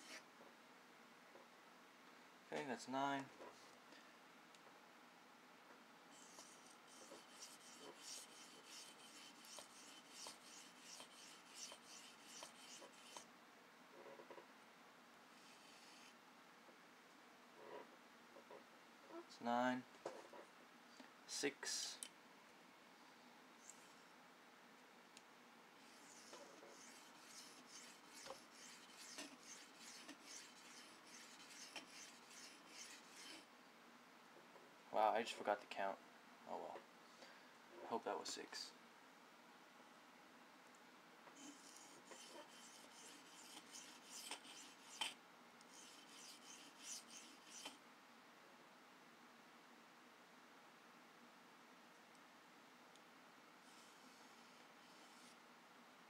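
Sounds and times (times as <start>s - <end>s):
knife scraping on sharpening stone: 25.9s - 33.5s, 41.4s - 47.8s.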